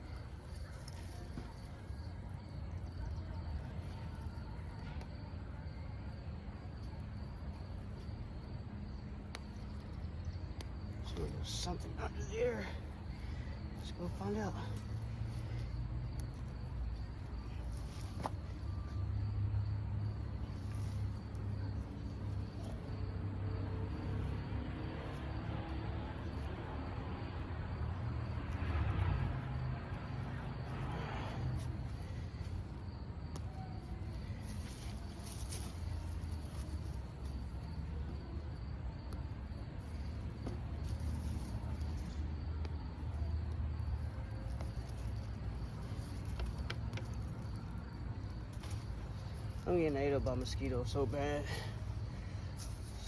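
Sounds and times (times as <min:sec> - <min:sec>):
insects trilling: 0:00.0 - 0:53.0
digging and scraping soil: 0:44.2 - 0:53.0.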